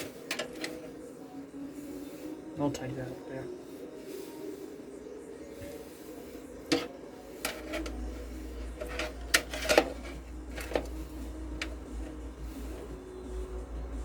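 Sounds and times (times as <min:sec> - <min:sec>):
faint background music: 0:00.0 - 0:14.0.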